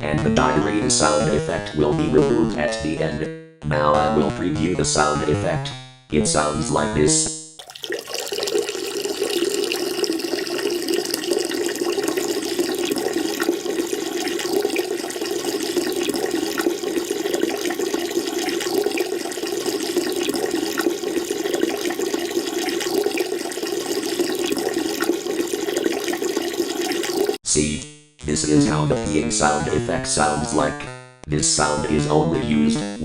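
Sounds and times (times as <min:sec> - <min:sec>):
urine splashing into toilet water: 0:07.6 - 0:27.4.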